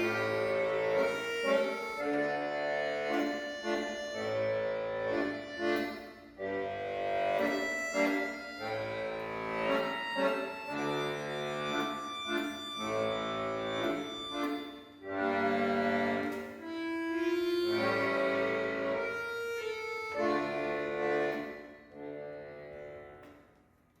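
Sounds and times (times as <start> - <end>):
instrumental background music: 0.0 - 23.4.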